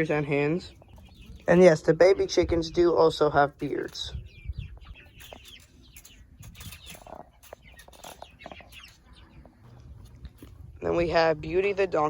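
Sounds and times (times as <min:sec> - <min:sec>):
chickens clucking softly: 0:00.0 - 0:12.0
high-pitched peeping calls: 0:00.5 - 0:02.8, 0:03.5 - 0:11.0.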